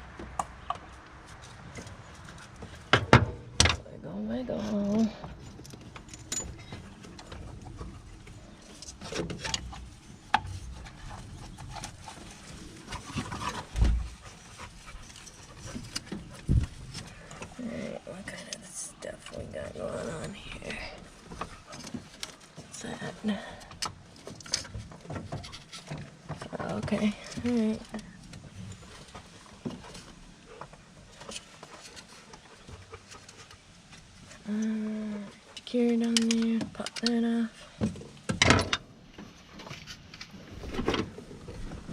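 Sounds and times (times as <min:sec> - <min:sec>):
metal tools clinking: 0:04.7 - 0:07.5.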